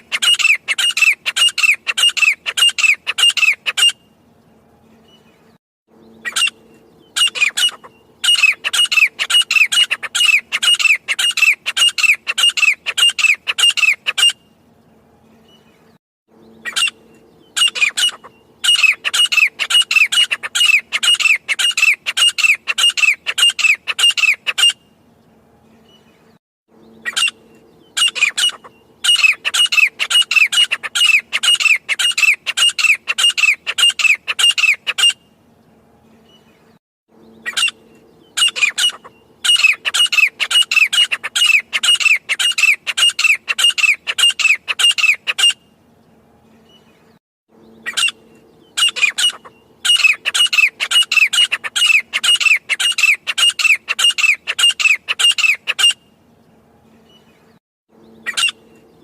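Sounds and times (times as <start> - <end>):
francolin calling: 0.0 - 4.1, 6.0 - 14.5, 16.4 - 24.8, 26.8 - 35.3, 37.2 - 45.7, 47.6 - 56.1, 58.0 - 59.0.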